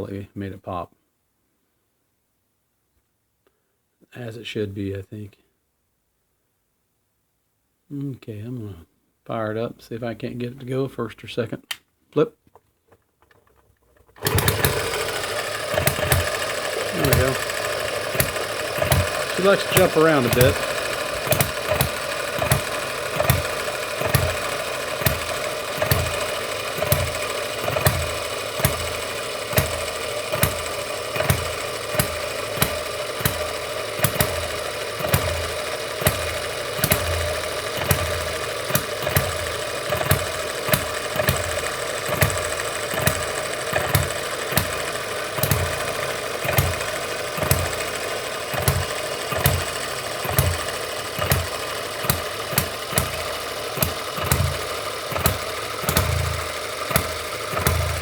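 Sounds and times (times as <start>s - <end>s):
small engine popping: 12.4s - 58.0s
steady mechanical clatter: 13.2s - 58.0s.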